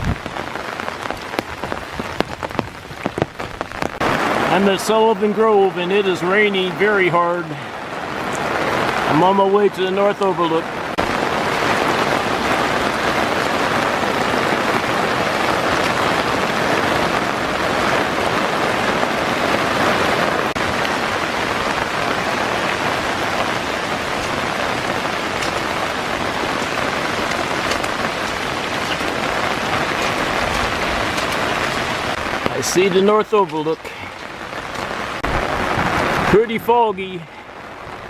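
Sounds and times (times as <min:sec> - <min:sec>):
heavy rain falling: 0:00.0 - 0:38.0.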